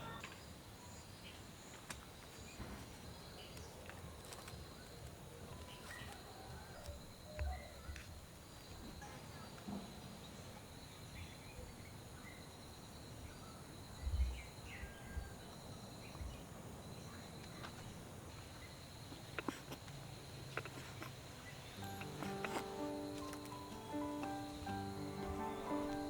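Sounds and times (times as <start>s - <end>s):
high insect drone: 19.9s - 26.0s
bird chirps: 21.3s - 26.0s.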